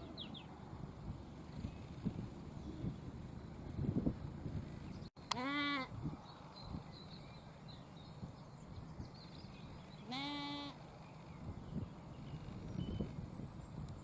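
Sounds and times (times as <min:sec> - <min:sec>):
low outdoor rumble: 0:00.0 - 0:07.1
sheep bleating: 0:05.3 - 0:05.9, 0:10.1 - 0:10.8.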